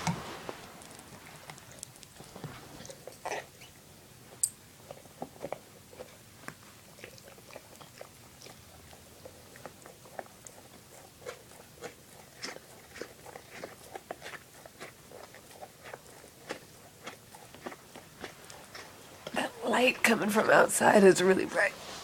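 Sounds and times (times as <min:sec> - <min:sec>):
pet chewing hard object: 0:00.0 - 0:19.9.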